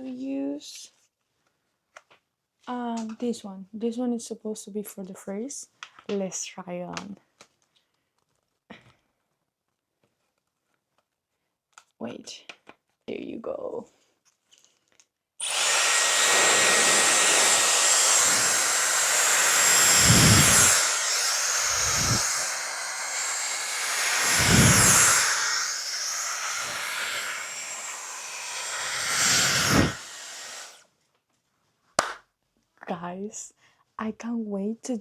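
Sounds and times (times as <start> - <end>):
high motor whine: 15.4 - 30.5
hair styler blowing air: 15.4 - 30.8.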